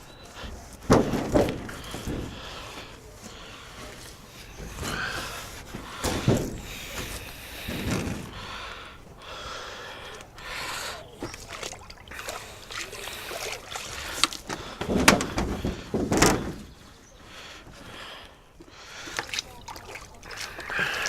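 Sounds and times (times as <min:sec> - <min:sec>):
loud knocks: 0:00.9 - 0:02.4, 0:04.6 - 0:08.9, 0:14.5 - 0:16.8
water sloshing on glass: 0:10.0 - 0:17.8, 0:18.6 - 0:21.0.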